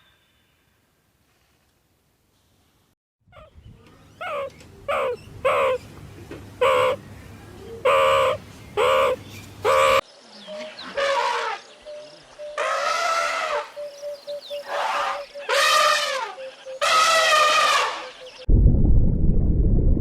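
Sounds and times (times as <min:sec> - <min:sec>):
animal calling: 0:03.3 - 0:05.9, 0:06.6 - 0:07.0, 0:07.6 - 0:11.6, 0:12.4 - 0:18.4.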